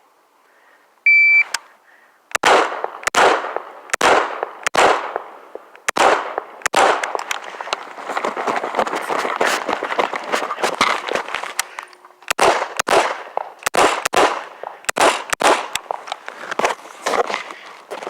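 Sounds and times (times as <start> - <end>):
shot timer beep: 1.1 - 1.6
gunshots: 2.3 - 7.4, 12.3 - 16.0.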